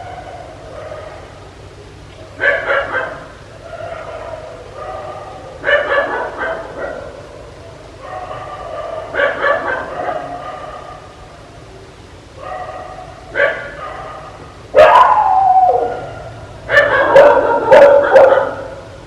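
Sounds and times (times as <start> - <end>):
dog barking: 0.0 - 1.4, 2.4 - 11.2, 12.4 - 18.9.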